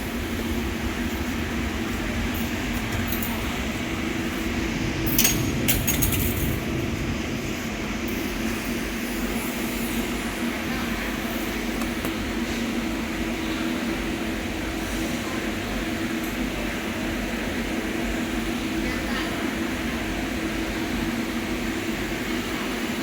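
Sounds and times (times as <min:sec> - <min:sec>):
welder hum and hiss: 0:00.0 - 0:15.2.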